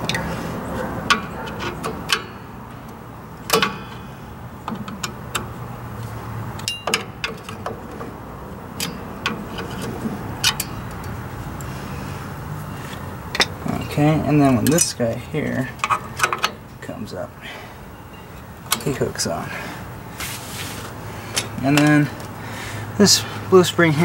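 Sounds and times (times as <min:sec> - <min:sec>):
metallic clicks of brake hardware: 0:00.0 - 0:00.3, 0:01.0 - 0:11.7, 0:12.8 - 0:13.9, 0:14.5 - 0:16.9, 0:18.0 - 0:19.3, 0:21.3 - 0:22.4
hand tools clinking: 0:06.6 - 0:08.0.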